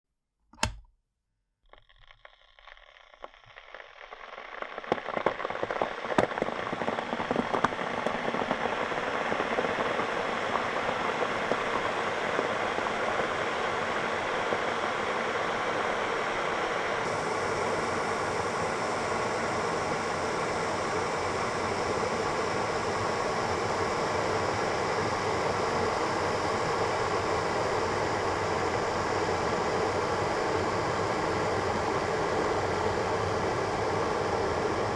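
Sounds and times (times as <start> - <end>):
kettle switch click: 0.6 - 0.9
kettle water heating and hissing: 0.6 - 0.9, 4.2 - 34.9.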